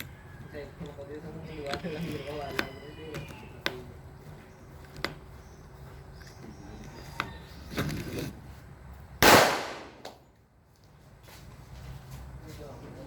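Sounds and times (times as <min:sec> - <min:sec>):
gunshot: 0:09.2 - 0:10.0.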